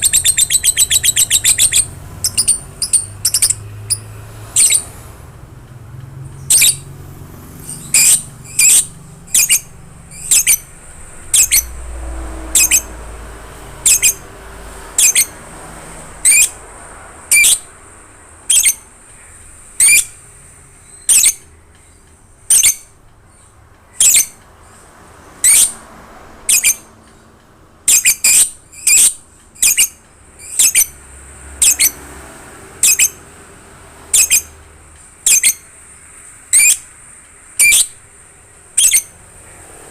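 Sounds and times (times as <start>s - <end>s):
bird shrill calls: 0.0s - 5.0s, 6.5s - 6.9s, 7.6s - 10.7s, 11.3s - 11.8s, 12.4s - 13.0s, 13.8s - 14.3s, 15.0s - 15.4s, 16.2s - 16.6s, 17.3s - 17.7s, 18.5s - 18.9s, 19.8s - 20.2s, 20.8s - 21.5s, 24.0s - 24.4s, 27.9s - 31.0s, 31.6s - 32.0s, 32.8s - 33.2s, 34.2s - 34.6s, 35.3s - 35.7s, 36.5s - 36.9s, 37.6s - 38.0s, 38.8s - 39.2s.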